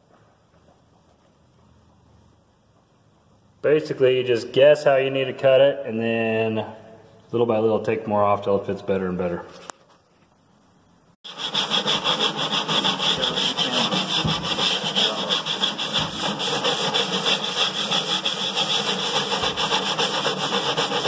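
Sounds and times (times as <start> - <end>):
electric sander sanding wood: 11.3 - 21.0.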